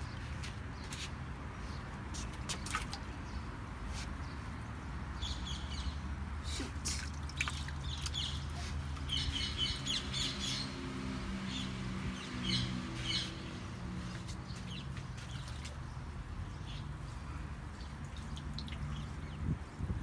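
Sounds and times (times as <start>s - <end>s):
birds chirping: 7.8s - 19.5s.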